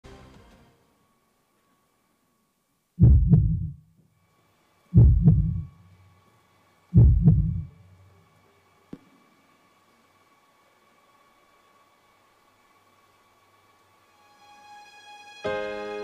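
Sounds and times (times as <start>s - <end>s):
deep heartbeat: 3.0s - 3.8s, 5.0s - 5.8s, 7.0s - 7.8s.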